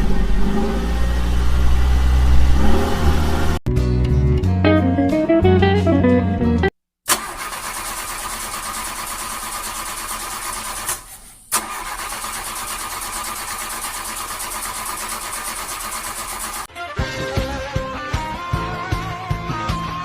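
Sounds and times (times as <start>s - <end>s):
engine running: 0.0s - 3.6s, 7.1s - 16.7s.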